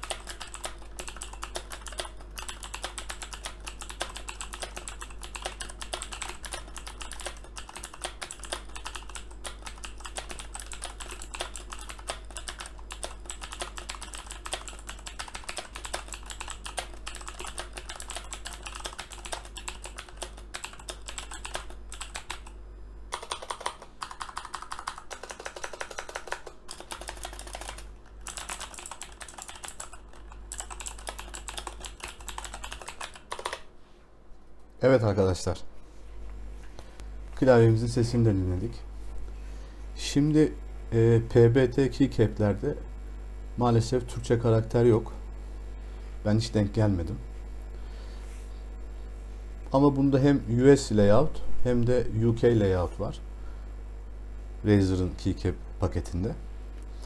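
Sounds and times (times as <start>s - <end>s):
clicky mechanical keyboard typing: 0.0s - 33.7s.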